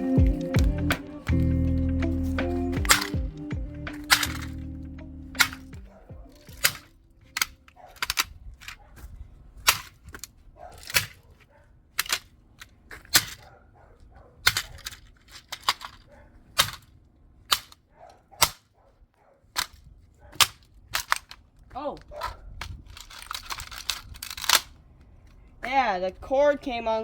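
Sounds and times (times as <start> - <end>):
hammer knocking on plastic: 5.8 - 6.6.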